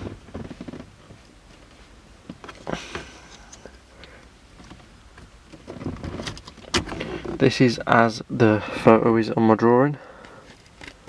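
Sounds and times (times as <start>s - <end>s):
handling clicks and rustles: 0.0s - 8.1s, 10.2s - 11.0s.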